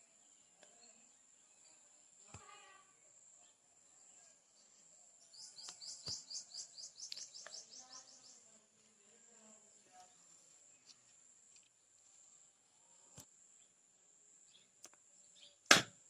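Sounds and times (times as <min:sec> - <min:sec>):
bird chirping: 0:03.3 - 0:08.6, 0:14.4 - 0:15.7
insects droning: 0:05.2 - 0:09.8.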